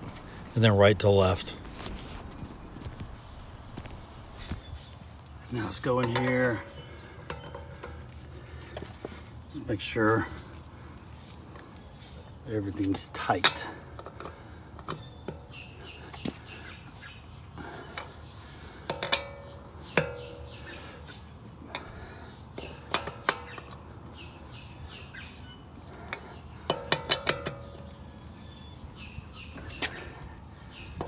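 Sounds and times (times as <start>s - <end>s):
birds chirping: 0.0s - 31.0s
wrench clinking on lug nuts: 4.9s - 10.6s, 11.5s - 30.2s.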